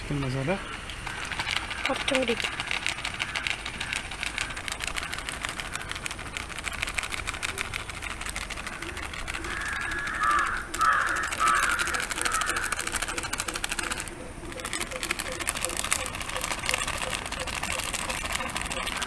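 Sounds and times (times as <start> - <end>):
dense fast crackle: 0.1 - 19.0
crow cawing: 0.2 - 6.5, 8.6 - 13.9.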